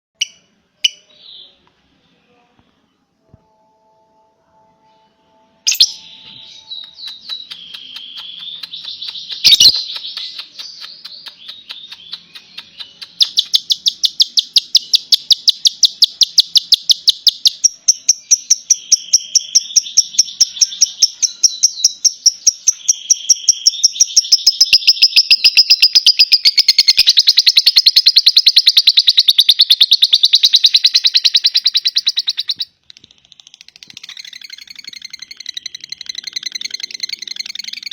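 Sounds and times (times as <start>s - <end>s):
high bird chirps: 5.7s - 37.9s
lovebird chatter: 6.8s - 37.9s.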